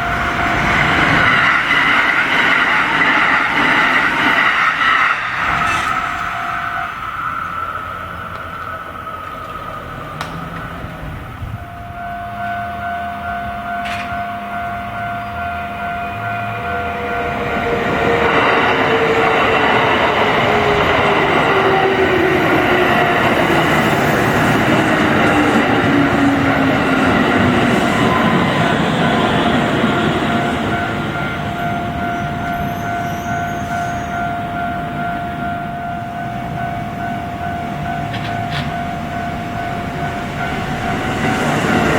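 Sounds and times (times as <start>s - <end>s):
train rumbling: 0.0s - 41.9s
lower alarm tone: 10.6s - 41.5s.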